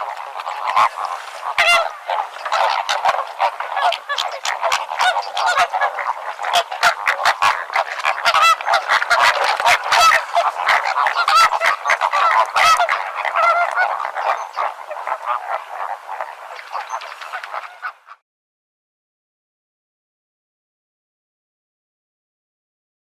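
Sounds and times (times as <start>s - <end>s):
flamingos honking: 0.0s - 18.2s.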